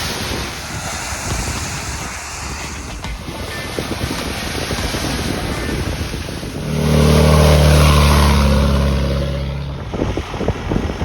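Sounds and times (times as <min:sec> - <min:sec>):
steady rushing noise: 0:00.0 - 0:11.0
vehicle engine passing by: 0:06.5 - 0:11.0.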